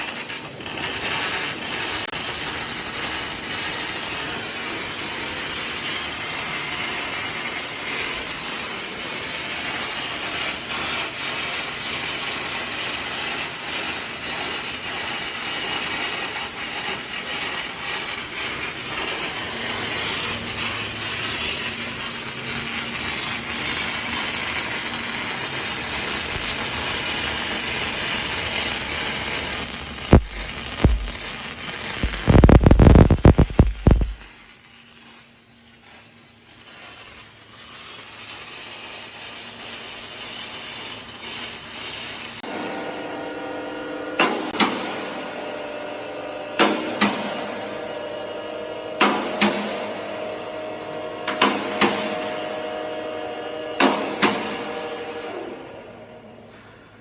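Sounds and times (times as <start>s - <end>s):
machinery rattling and hissing: 0.0s - 42.4s.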